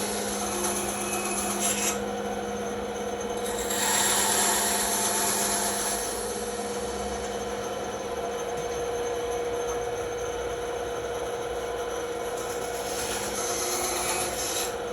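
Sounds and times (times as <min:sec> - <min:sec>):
bandsaw cutting wood: 0:00.0 - 0:02.0, 0:03.4 - 0:06.2, 0:12.9 - 0:14.8.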